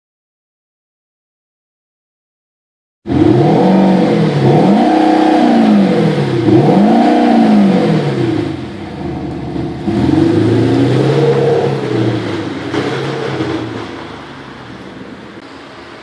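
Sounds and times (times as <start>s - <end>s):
diesel engine revving: 3.1s - 16.0s
engine idling: 7.7s - 16.0s.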